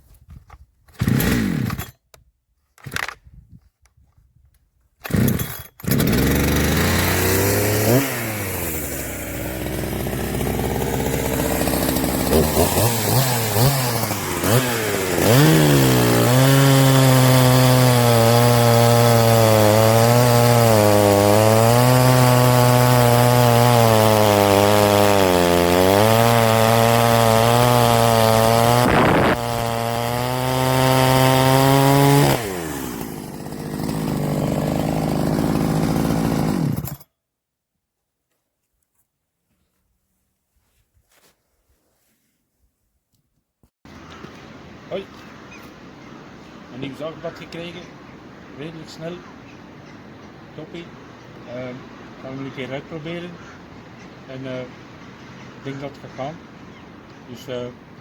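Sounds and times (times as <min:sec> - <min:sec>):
chainsaw revving and cutting wood: 0:01.0 - 0:01.9, 0:05.0 - 0:37.1.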